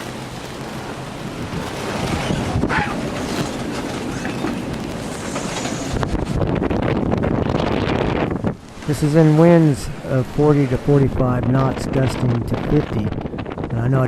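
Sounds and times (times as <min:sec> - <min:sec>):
boat clattering and knocking: 0:00.0 - 0:09.6
gale-force wind: 0:00.0 - 0:14.0
rushing sea: 0:00.0 - 0:14.0.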